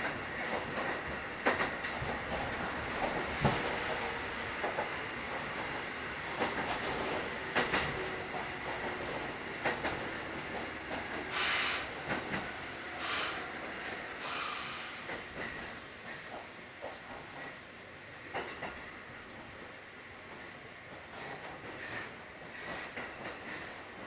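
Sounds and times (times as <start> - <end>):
train rolling over rail joints: 0.0 - 24.0
short bursts of hiss: 11.3 - 15.3.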